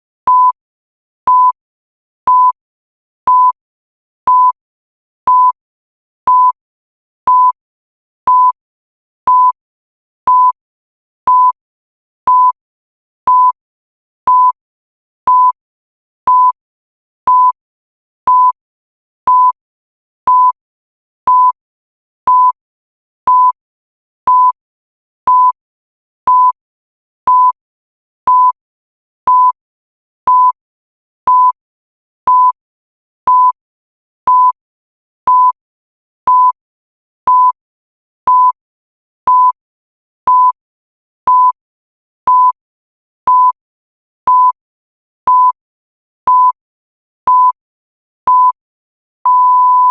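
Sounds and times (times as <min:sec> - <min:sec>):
timer beeping: 0:49.3 - 0:49.9.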